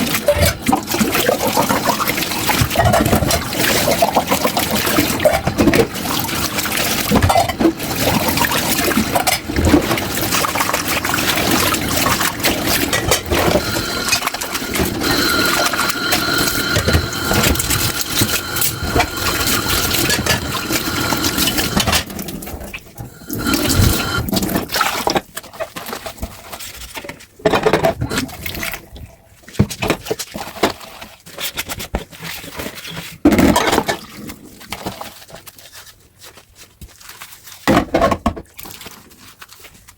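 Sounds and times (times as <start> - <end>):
tap water running into sink: 0.0 - 25.2.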